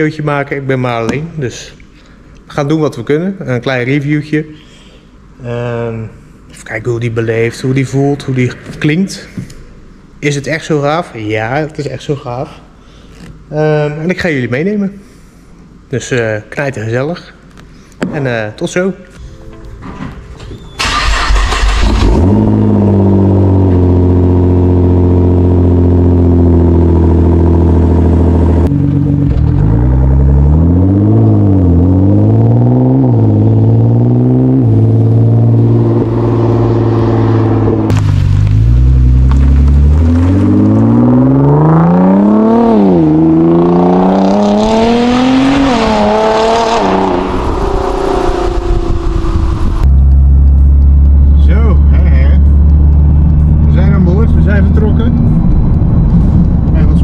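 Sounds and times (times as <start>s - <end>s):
car engine revving: 20.8s - 57.0s.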